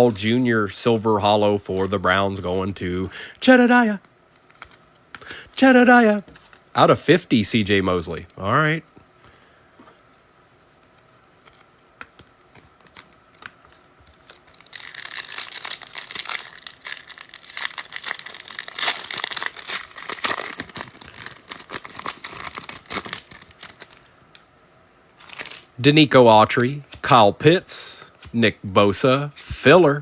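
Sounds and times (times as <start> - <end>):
foil wrapper tearing and crinkling: 12.5 - 24.1, 25.2 - 25.7.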